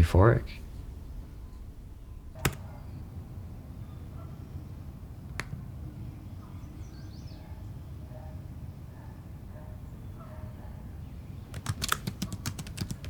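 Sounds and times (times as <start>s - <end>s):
low background rumble: 0.0s - 8.3s
sharp clicks: 0.5s - 3.1s, 11.5s - 13.0s.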